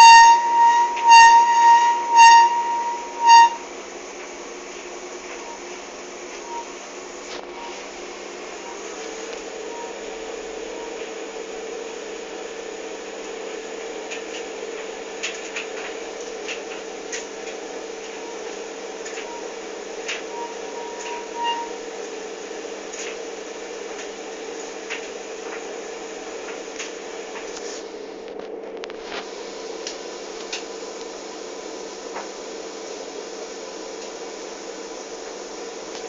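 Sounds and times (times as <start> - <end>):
short sharp squeaks: 0.0 - 3.6, 20.3 - 21.8
high squeal: 0.0 - 3.7, 6.4 - 6.8, 20.3 - 21.8
tumble dryer humming: 0.0 - 36.0.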